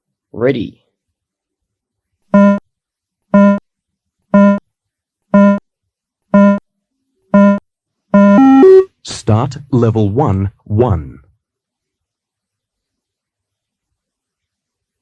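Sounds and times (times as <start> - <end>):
short electronic beeps: 2.4 - 2.6, 3.4 - 3.6, 4.4 - 4.6, 5.4 - 5.6, 6.4 - 6.6, 7.4 - 7.6, 8.2 - 8.9.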